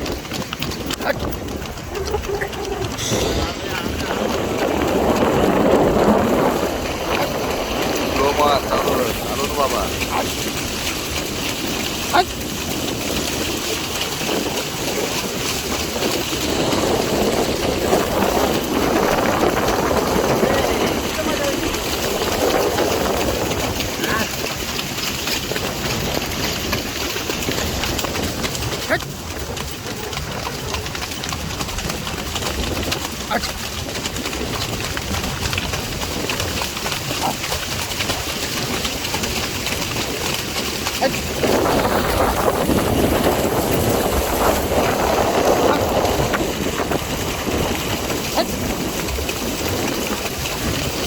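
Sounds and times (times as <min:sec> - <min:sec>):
wind on microphone: 0:00.0 - 0:51.0
indistinct voices: 0:01.9 - 0:05.2, 0:41.0 - 0:42.2
brief sharp sound: 0:03.0 - 0:04.6.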